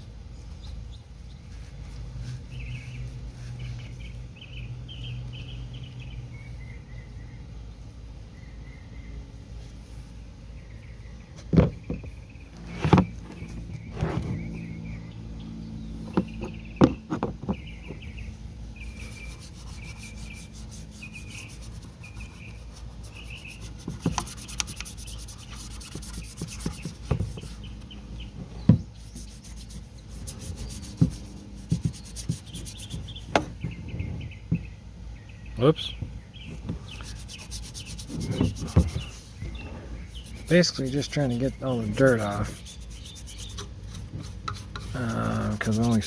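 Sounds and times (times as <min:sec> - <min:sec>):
scrubbing metal exhaust pipe: 0:18.8 - 0:34.0, 0:35.8 - 0:46.0.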